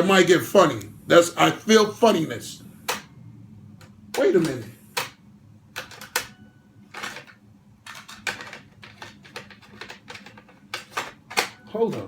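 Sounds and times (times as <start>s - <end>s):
plastic cassettes clattering: 4.2s - 5.2s, 5.8s - 12.0s.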